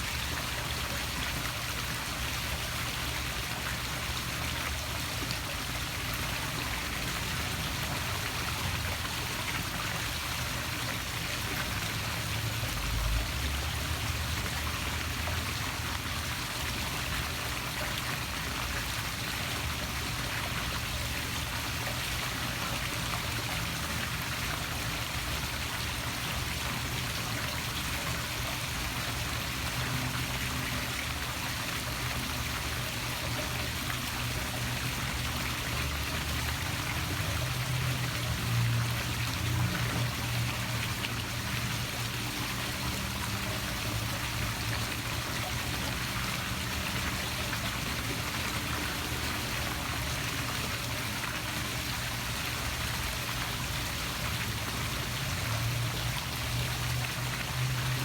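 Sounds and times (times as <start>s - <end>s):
waterfall splashing into pool: 0.0s - 58.0s.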